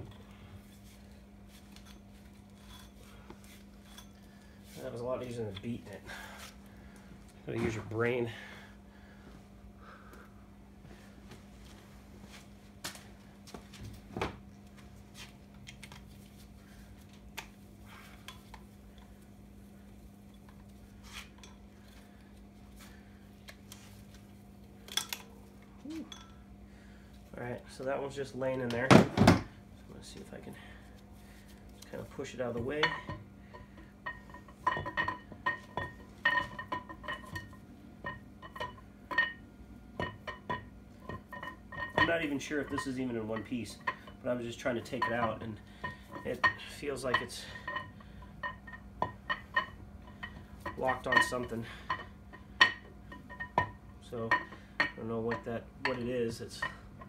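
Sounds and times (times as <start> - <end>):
faint steady hum: 0.0 - 57.0
metal tools clinking: 40.0 - 56.8.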